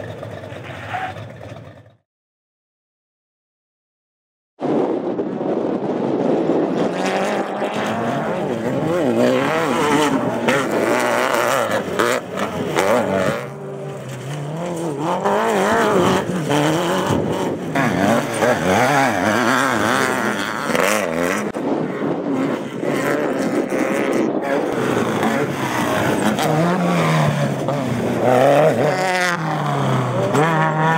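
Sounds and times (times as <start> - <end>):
race vehicle engines revving: 0.0 - 2.0, 5.9 - 30.9.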